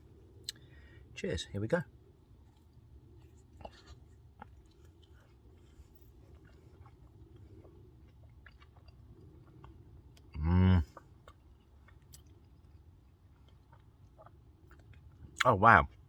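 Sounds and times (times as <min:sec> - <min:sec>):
man chewing: 0:00.1 - 0:00.9, 0:02.0 - 0:16.0
wet mouth clicks: 0:00.4 - 0:00.6
man humming mmm: 0:10.4 - 0:10.9.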